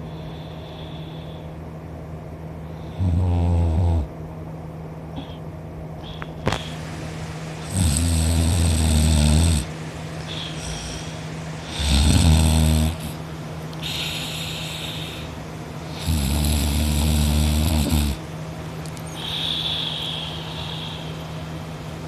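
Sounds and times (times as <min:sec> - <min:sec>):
quiet breaths: 0:00.0 - 0:01.7, 0:10.2 - 0:12.1, 0:12.8 - 0:18.2, 0:19.0 - 0:21.6
person snoring: 0:02.8 - 0:04.1, 0:07.6 - 0:09.7, 0:10.3 - 0:13.2, 0:13.8 - 0:18.2.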